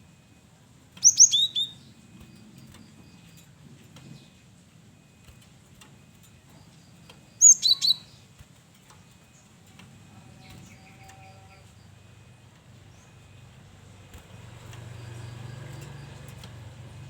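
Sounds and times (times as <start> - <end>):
faint short bird chirps: 1.0 - 1.8, 7.4 - 8.2.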